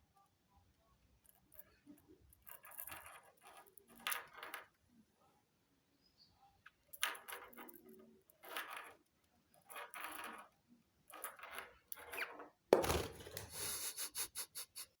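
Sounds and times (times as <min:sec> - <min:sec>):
walnut shell scraping and rattling: 0:06.9 - 0:13.4.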